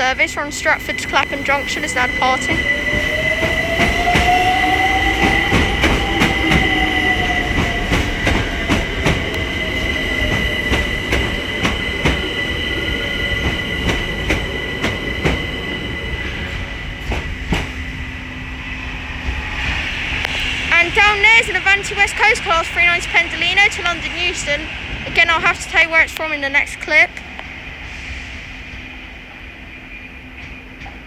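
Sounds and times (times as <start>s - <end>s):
train motor whine: 0.0s - 26.8s
train high squeal: 0.0s - 31.0s.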